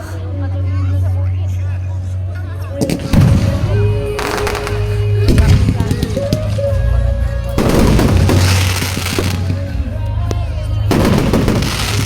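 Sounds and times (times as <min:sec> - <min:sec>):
background music with bass: 0:00.0 - 0:12.0
fireworks crackling and popping: 0:02.8 - 0:06.9, 0:07.5 - 0:12.0.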